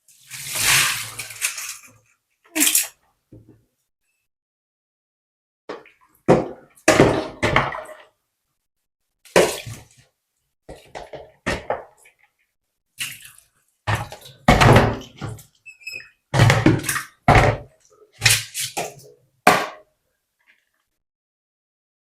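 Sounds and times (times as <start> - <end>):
water sloshing and pouring: 0.0 - 2.9, 9.2 - 12.3, 12.9 - 15.6.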